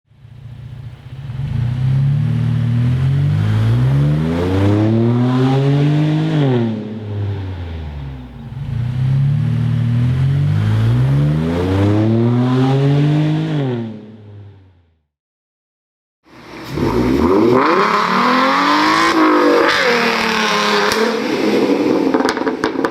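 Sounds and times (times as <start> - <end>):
car engine revving: 0.1 - 14.9, 16.4 - 22.8.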